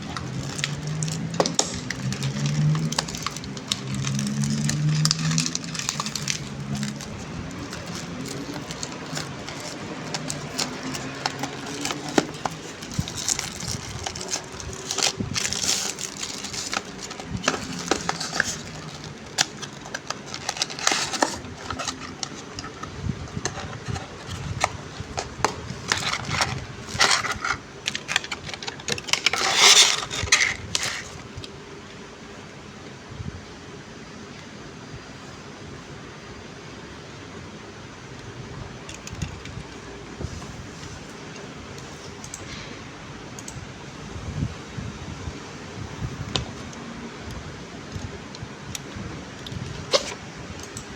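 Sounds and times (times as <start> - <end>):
packaging crinkling: 0.0 - 31.5, 49.4 - 50.3.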